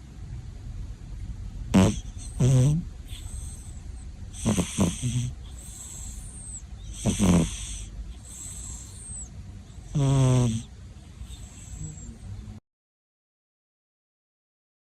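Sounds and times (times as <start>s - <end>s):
loud rasping snore: 1.7s - 3.7s, 4.3s - 12.2s
faint high whistling breath: 3.0s - 9.9s, 10.6s - 12.4s.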